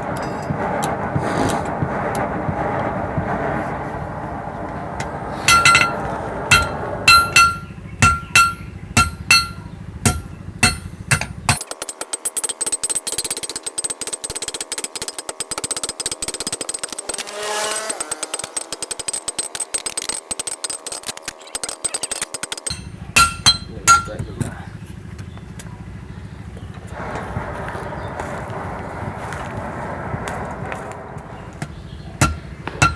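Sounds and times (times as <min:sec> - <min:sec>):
rapid scraping clicks on metal: 0:05.5 - 0:24.2
hammer striking steel on anvil: 0:05.5 - 0:24.3, 0:31.6 - 0:32.9.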